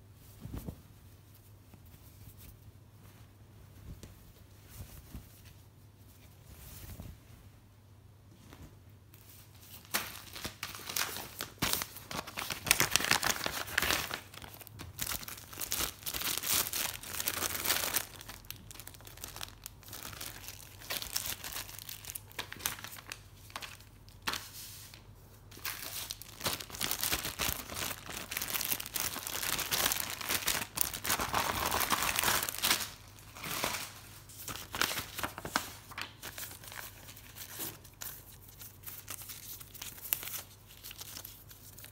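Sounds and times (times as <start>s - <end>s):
packaging crinkling and tearing: 9.8s - 24.4s, 25.6s - 41.9s.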